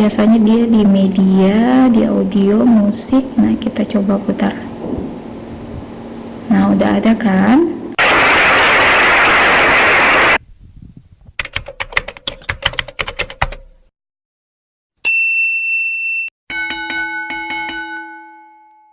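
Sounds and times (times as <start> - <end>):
loud hiss: 8.0 - 10.4
sharp clicks: 11.4 - 13.6
bright ding: 15.0 - 18.9
chime ringing: 15.1 - 18.9.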